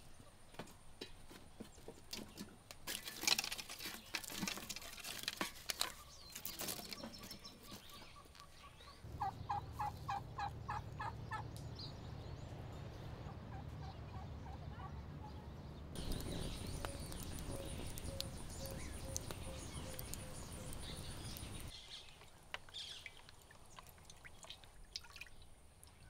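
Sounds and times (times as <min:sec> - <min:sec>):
clicks and rustling: 0:01.0 - 0:08.5.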